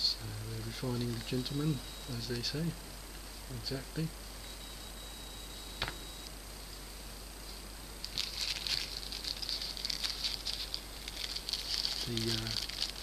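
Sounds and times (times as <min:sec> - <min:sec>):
packaging rustling: 0:08.0 - 0:13.0.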